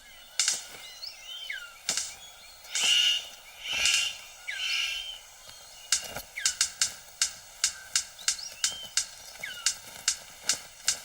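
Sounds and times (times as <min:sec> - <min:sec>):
faint gliding bird whistles: 0:00.0 - 0:06.7
harsh rasping bird calls: 0:00.0 - 0:10.9
sharp bird clicks: 0:00.3 - 0:11.0.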